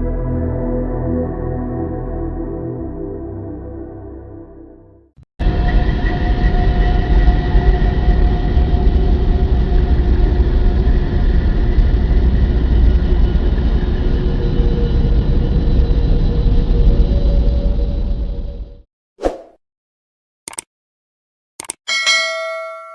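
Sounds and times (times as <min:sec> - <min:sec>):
loud low rumble: 0:05.4 - 0:18.8.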